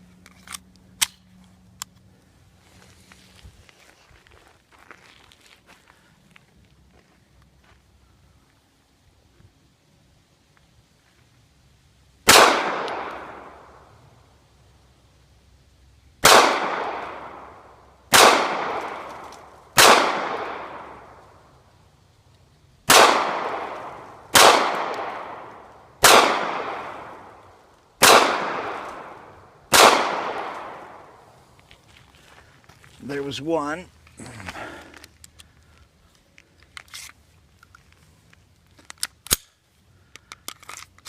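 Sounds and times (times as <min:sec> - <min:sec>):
gunshots with ringing tail: 0:12.3 - 0:13.5, 0:16.2 - 0:17.5, 0:18.1 - 0:19.0, 0:19.8 - 0:21.0, 0:22.9 - 0:27.2, 0:28.0 - 0:31.0.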